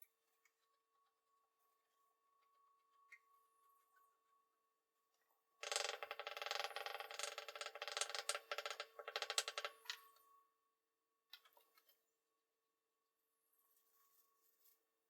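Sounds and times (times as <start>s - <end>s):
rapid ratchet-like clicking rasp: 5.6s - 10.0s.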